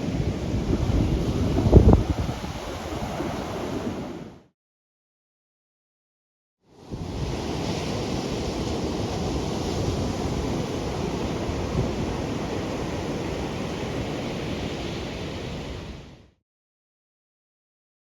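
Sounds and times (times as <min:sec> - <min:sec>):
wind rumbling on microphone: 0:00.0 - 0:04.4
ocean surf washing: 0:00.0 - 0:04.5, 0:06.7 - 0:16.3.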